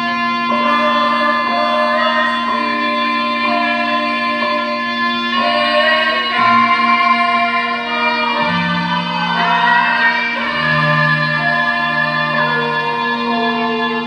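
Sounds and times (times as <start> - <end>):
low drone: 0.0 - 14.0
sustained melodic notes: 0.0 - 14.0.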